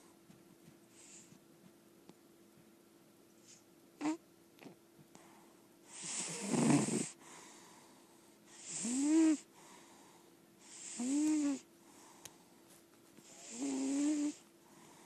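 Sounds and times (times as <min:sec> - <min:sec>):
cat snoring: 0:04.0 - 0:04.2, 0:05.9 - 0:07.8, 0:08.5 - 0:12.1, 0:13.2 - 0:15.0.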